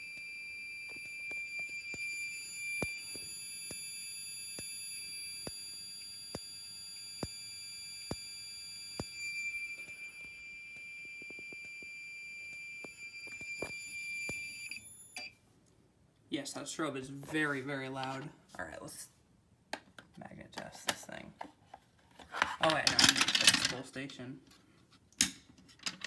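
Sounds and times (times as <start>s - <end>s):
steady high-pitched whine: 0.0s - 15.3s
strobe flash clicking: 0.1s - 15.3s.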